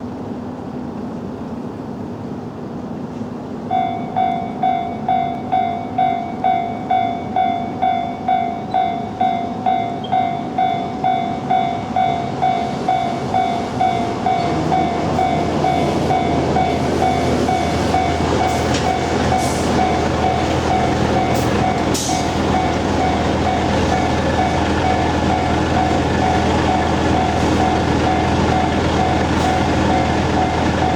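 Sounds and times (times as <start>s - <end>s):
electric train rumbling: 0.0s - 30.9s
level crossing warning bell: 3.7s - 30.9s
wheels clicking over rail joints: 18.0s - 30.9s.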